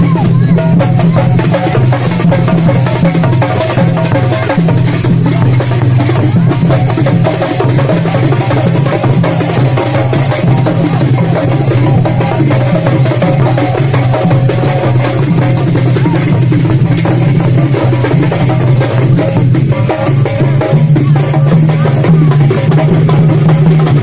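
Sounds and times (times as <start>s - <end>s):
loud percussion music: 0.0s - 24.0s.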